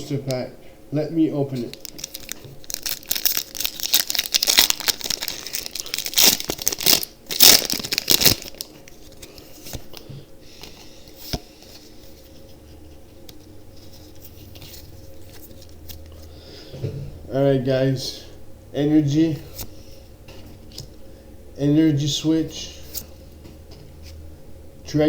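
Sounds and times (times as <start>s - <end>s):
foil wrapper tearing and crinkling: 1.6s - 9.3s.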